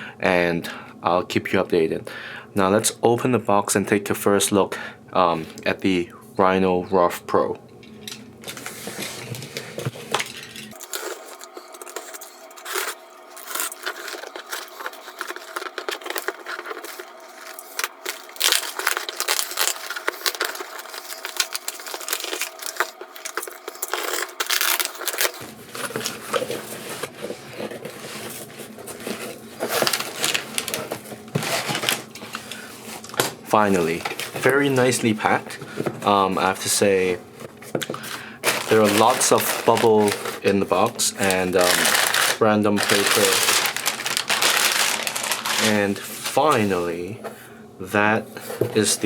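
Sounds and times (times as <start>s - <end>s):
packing paper rustling: 8.4s - 47.2s.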